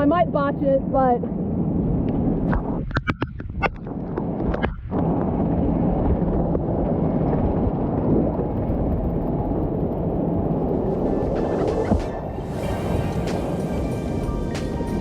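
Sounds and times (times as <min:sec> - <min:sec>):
rushing whitewater rumble: 0:04.9 - 0:15.0.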